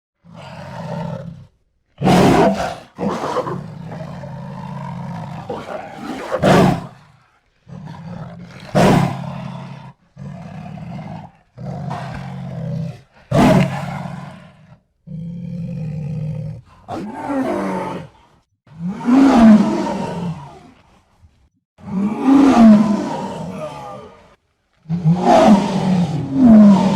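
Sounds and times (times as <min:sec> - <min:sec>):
jaguar roaring and growling: 0:00.2 - 0:21.1, 0:21.8 - 0:26.9.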